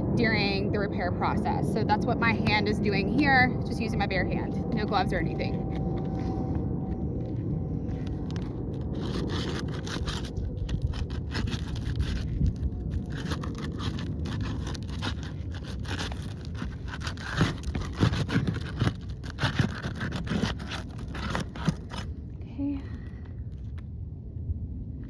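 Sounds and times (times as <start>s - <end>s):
steady low rumble: 0.0s - 25.0s
tool scraping under roof shingles: 7.2s - 22.4s.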